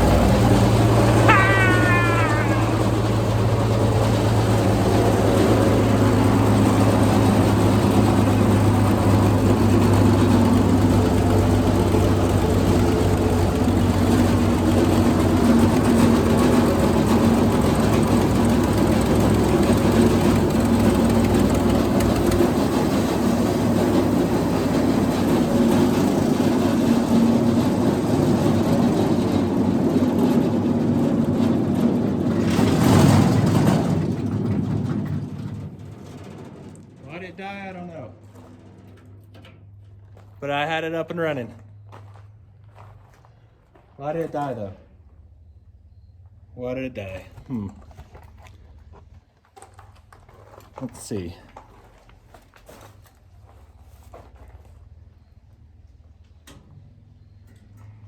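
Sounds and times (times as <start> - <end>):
wood chipper engine running: 0.0 - 40.4.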